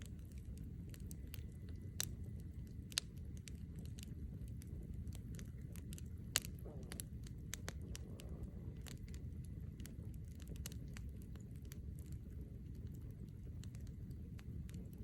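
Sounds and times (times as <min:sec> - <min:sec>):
campfire crackling and popping: 0:00.0 - 0:15.0
low rumble: 0:00.0 - 0:15.0.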